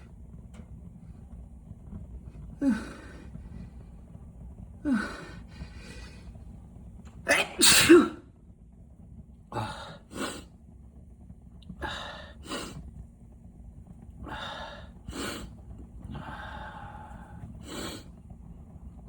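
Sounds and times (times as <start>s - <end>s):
person breathing hard: 2.6s - 3.6s, 4.8s - 6.4s, 9.6s - 10.5s, 11.8s - 12.8s, 14.2s - 18.2s.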